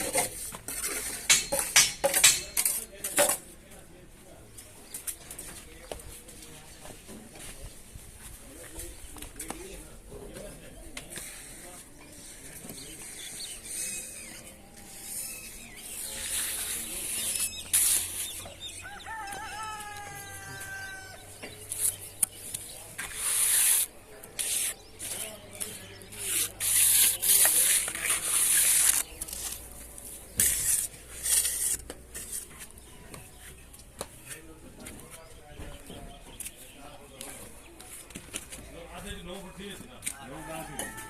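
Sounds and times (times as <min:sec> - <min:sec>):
rooster crowing: 0:18.8 - 0:21.2, 0:40.2 - 0:41.0.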